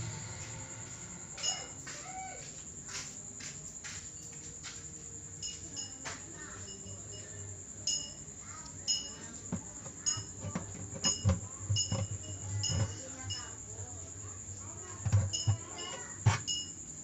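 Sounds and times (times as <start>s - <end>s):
low thumps: 0.0s - 1.8s
high-pitched machine whine: 0.0s - 2.2s.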